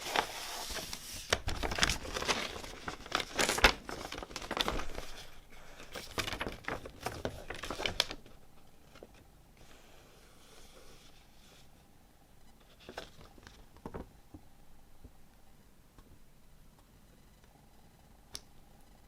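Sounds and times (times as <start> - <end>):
packaging rustling and crinkling: 0.0 - 9.2.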